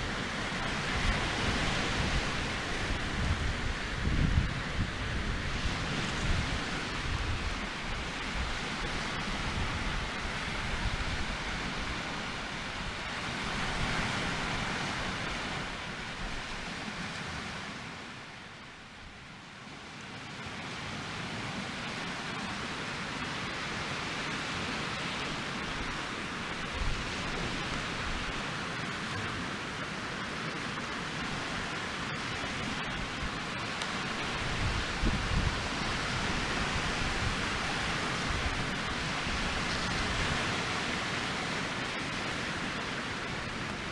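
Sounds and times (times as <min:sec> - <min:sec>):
wind buffeting microphone: 0:00.0 - 0:17.6, 0:31.2 - 0:43.9.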